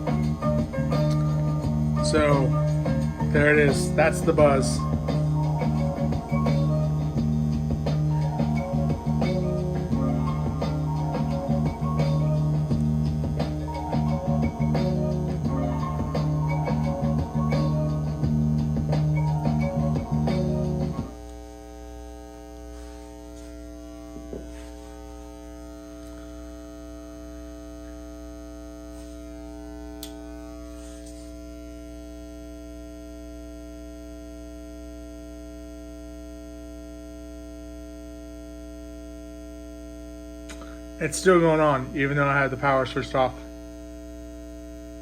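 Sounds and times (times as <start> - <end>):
music: 0.0 - 22.3, 39.0 - 45.0
amplifier mains buzz: 0.0 - 45.0.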